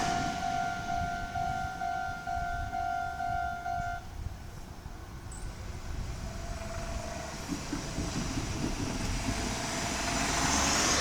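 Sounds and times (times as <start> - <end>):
vehicle engine and tyre noise: 0.0 - 11.0.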